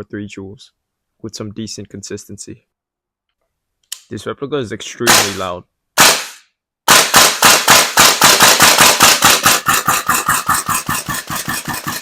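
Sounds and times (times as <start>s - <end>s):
airsoft rifle shots: 5.1s - 9.7s.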